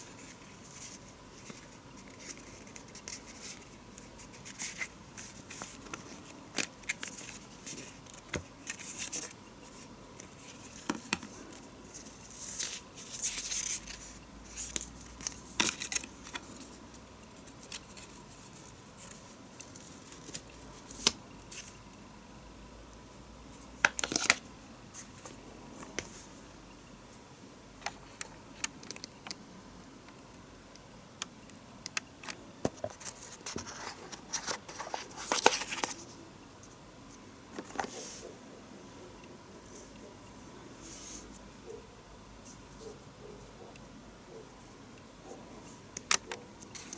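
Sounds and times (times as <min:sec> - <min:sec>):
packaging being handled: 0:32.8 - 0:36.1.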